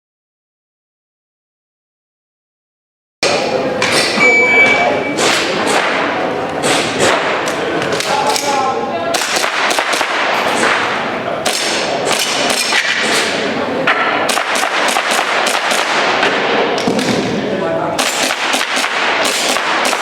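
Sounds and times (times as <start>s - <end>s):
airsoft pistols firing: 5.2s - 17.4s, 18.0s - 20.0s.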